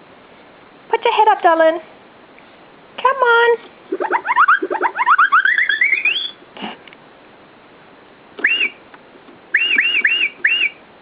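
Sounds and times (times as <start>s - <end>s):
electronic toy chirps rising in pitch: 3.9s - 6.4s, 8.4s - 8.8s, 9.5s - 10.8s.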